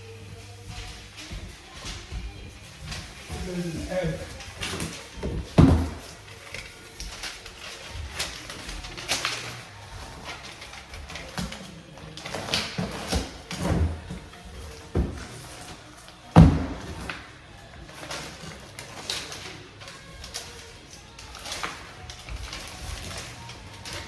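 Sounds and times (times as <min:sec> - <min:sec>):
hard objects knocking and thumping: 0:00.6 - 0:09.5, 0:10.1 - 0:17.3.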